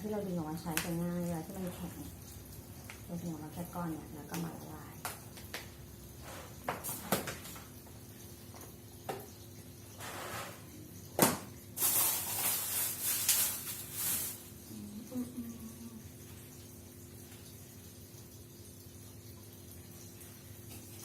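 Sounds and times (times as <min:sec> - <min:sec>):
hissing rustle: 0:11.8 - 0:14.6.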